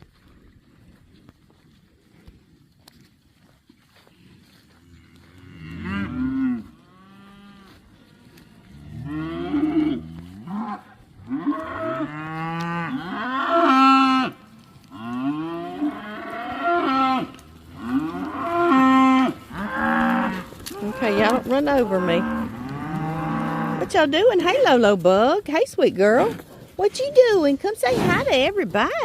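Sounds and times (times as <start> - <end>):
cattle mooing: 5.0 - 25.2.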